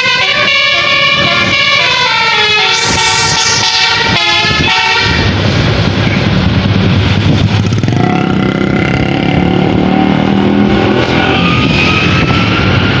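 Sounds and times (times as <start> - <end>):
multi-tone bus horn melody: 0.0 - 5.7, 10.4 - 13.0
bus engine running: 0.0 - 13.0.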